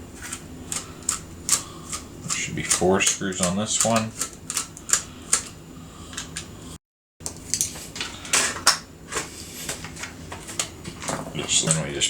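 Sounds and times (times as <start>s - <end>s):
screwdriver clicks and taps: 3.4s - 5.5s.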